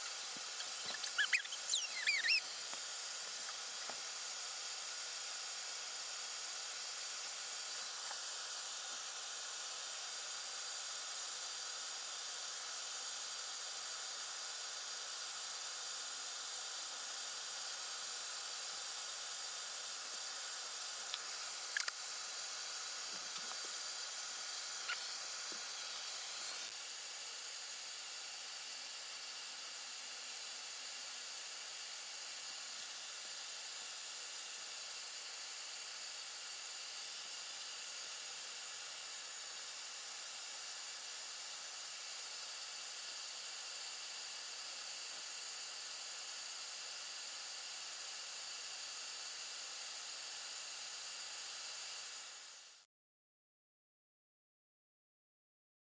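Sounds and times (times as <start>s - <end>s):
steady even hiss: 0.0s - 26.8s.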